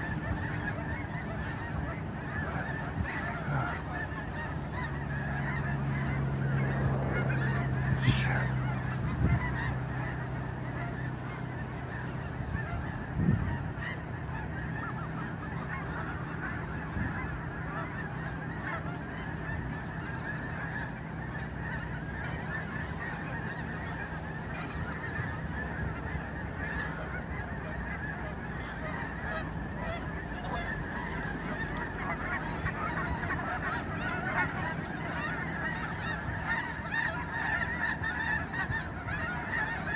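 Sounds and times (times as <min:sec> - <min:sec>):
geese honking: 0:00.0 - 0:39.9.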